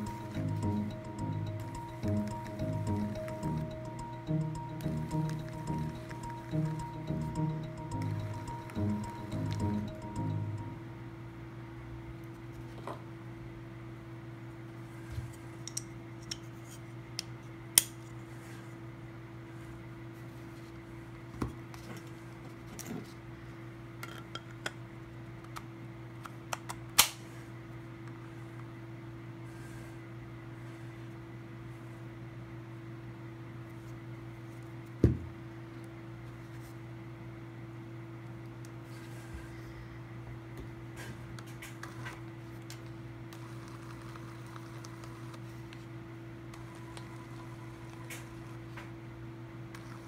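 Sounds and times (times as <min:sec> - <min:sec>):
steady low hum: 0:00.0 - 0:11.6.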